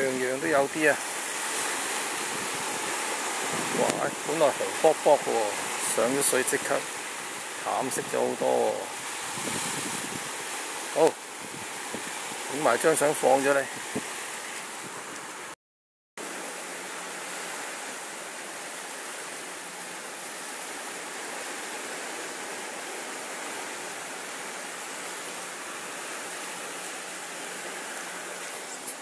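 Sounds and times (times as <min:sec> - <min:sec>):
outdoor noise: 0:13.7 - 0:15.6, 0:16.2 - 0:29.0.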